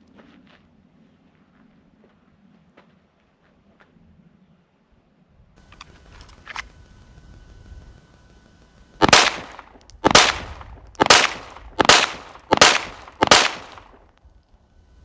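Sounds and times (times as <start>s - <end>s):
pistol shots echoing: 9.0s - 14.0s.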